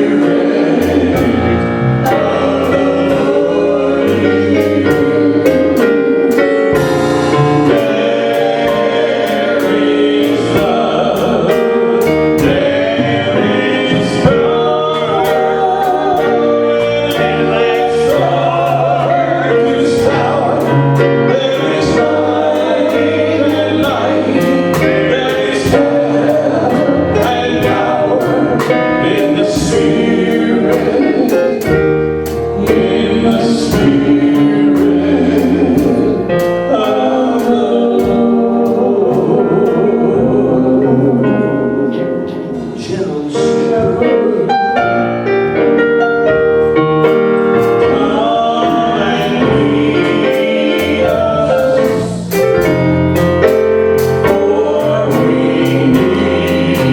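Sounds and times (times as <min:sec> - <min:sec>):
instruments with steady beat: 0:00.0 - 0:40.0
voices singing gospel music: 0:00.0 - 0:56.9.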